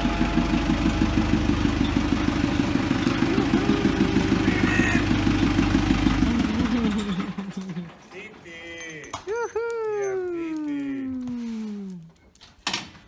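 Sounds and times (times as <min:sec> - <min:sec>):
tractor engine running: 0:00.0 - 0:09.4.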